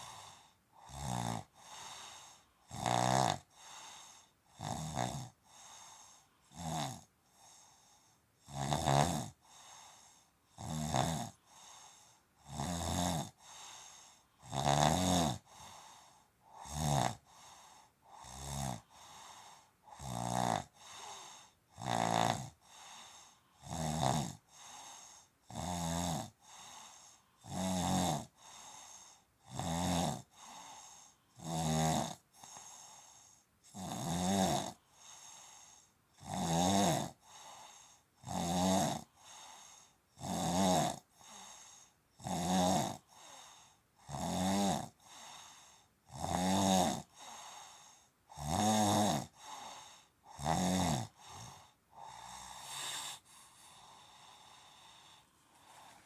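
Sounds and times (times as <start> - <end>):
soft breathing: 0.0 - 0.8, 1.5 - 2.6, 3.5 - 4.4, 18.8 - 19.8, 20.7 - 21.6, 22.6 - 23.6, 26.4 - 27.4, 28.3 - 29.4, 30.3 - 31.4, 39.2 - 40.0, 41.2 - 42.0, 43.1 - 43.9, 45.0 - 46.0, 47.0 - 48.2, 49.3 - 50.3, 51.1 - 56.0
person snoring: 0.0 - 5.8, 6.5 - 7.6, 8.4 - 9.4, 10.6 - 11.4, 12.4 - 13.5, 14.4 - 15.8, 16.6 - 17.5, 18.1 - 19.1, 19.9 - 56.0.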